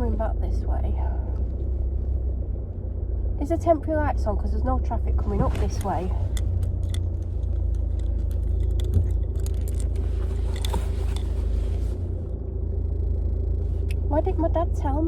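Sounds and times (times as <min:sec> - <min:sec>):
car engine idling: 0:00.0 - 0:15.0
light clicks and ticks: 0:05.4 - 0:11.5.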